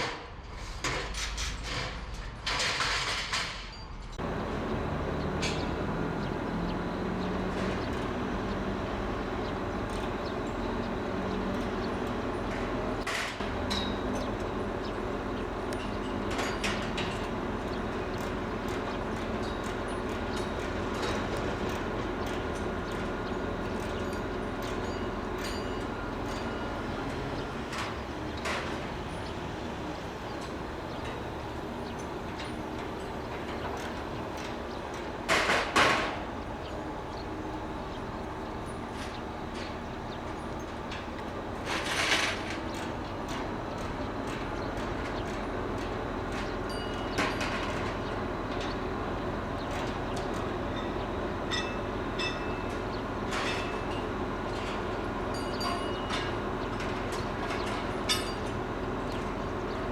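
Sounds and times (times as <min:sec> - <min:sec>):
low outdoor rumble and hum: 0:04.0 - 0:59.9.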